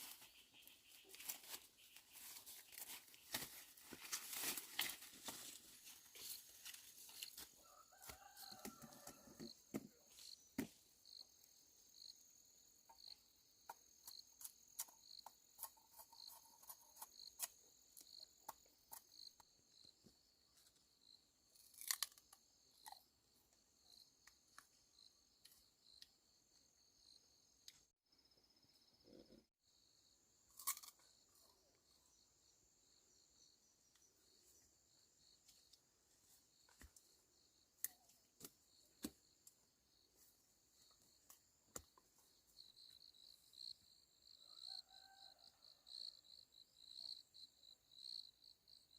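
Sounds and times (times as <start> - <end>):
insect chirping: 9.5 - 48.9
vegetable stems snapping: 21.7 - 22.4.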